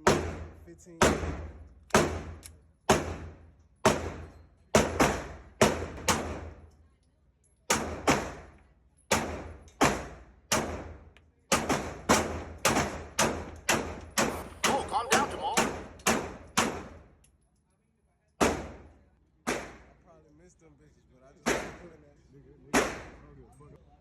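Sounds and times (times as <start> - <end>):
pistol shots echoing: 11.5 - 17.0.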